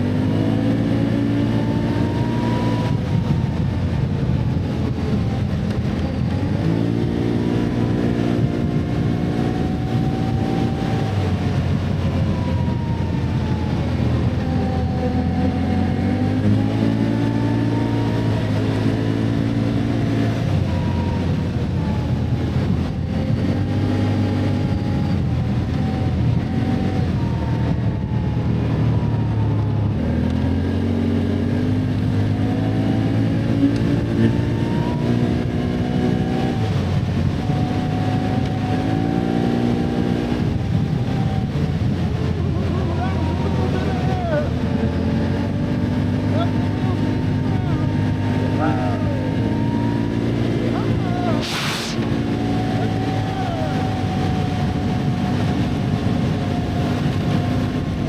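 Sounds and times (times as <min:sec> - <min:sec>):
atv engine revving: 0:00.0 - 0:58.0.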